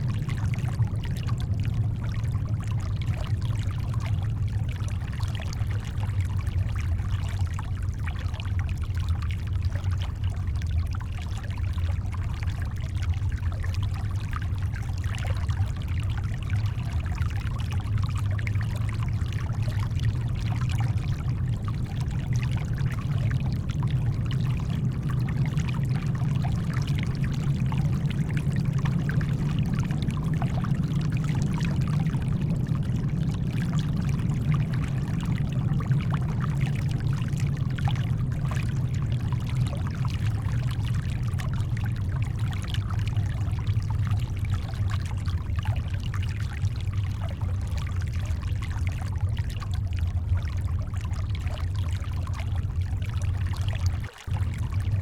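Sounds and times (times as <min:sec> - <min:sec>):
faint shoreline water: 0:00.0 - 0:55.0
brown noise: 0:54.2 - 0:55.0.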